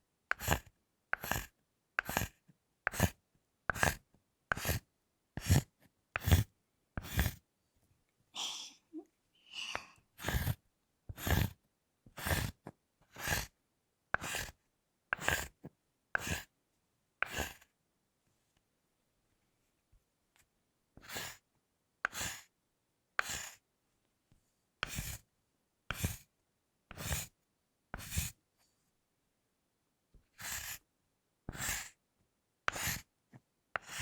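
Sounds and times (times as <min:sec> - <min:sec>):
knife scraping chocolate: 0:00.3 - 0:07.4, 0:10.2 - 0:16.5, 0:17.2 - 0:17.7, 0:21.0 - 0:21.4, 0:22.0 - 0:22.5, 0:23.2 - 0:23.6, 0:24.8 - 0:25.2, 0:25.9 - 0:26.2, 0:26.9 - 0:27.4, 0:28.0 - 0:28.4, 0:30.3 - 0:30.9, 0:31.5 - 0:32.0, 0:32.7 - 0:33.1, 0:33.8 - 0:34.0.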